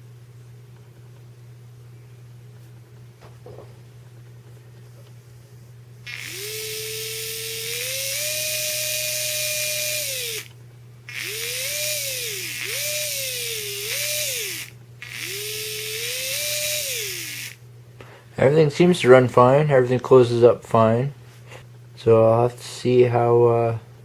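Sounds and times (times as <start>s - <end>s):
small electric motor whining: 6.0s - 17.6s.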